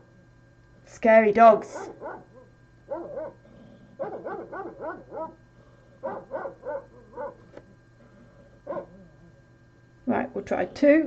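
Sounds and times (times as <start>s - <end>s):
recorded dogs barking: 1.7s - 5.4s, 6.0s - 7.6s, 8.6s - 9.2s.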